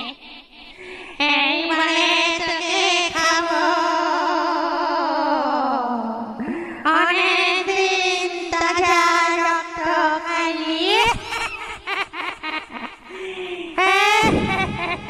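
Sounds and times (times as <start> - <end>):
eerie wordless female vocal: 0.0 - 11.6, 12.8 - 15.0.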